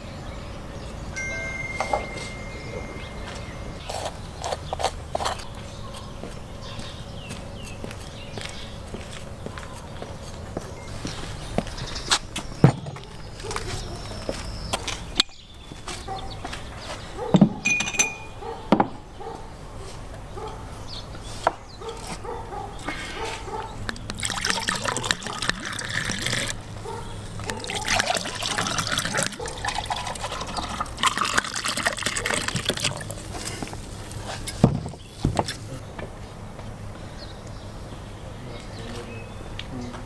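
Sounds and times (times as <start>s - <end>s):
glass knocks and clinks: 1.2s - 3.9s, 17.4s - 19.0s
drink pouring into glasses: 24.1s - 26.6s, 27.6s - 34.6s.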